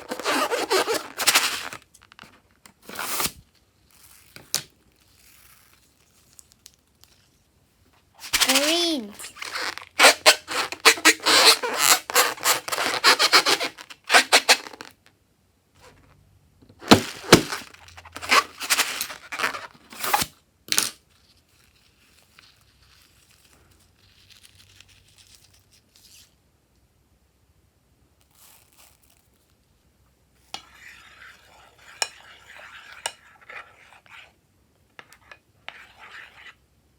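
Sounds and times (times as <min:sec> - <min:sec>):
faint scratching: 0:35.0 - 0:36.6.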